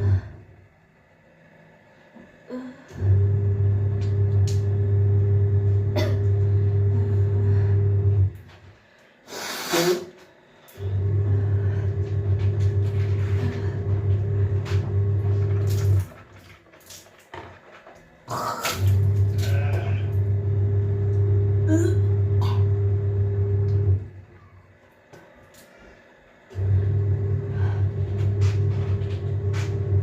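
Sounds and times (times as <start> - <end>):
low electric motor hum: 0.0 - 9.0, 10.4 - 16.6, 18.8 - 30.0.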